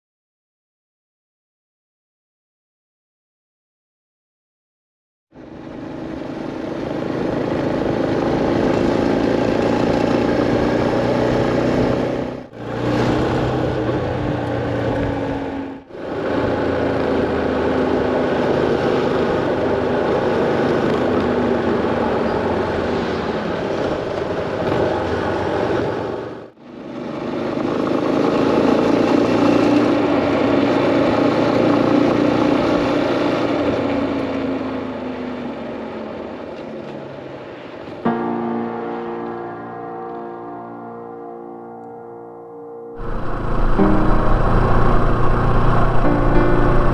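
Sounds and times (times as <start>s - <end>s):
motorcycle engine running: 5.4s - 24.2s, 26.6s - 34.4s, 43.0s - 46.9s
road and wind noise: 5.4s - 38.1s, 43.0s - 46.9s.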